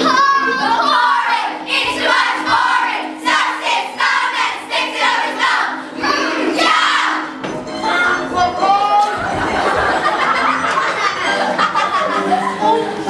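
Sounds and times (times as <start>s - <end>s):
children singing together: 0.0s - 8.1s
musical accompaniment: 0.0s - 13.0s.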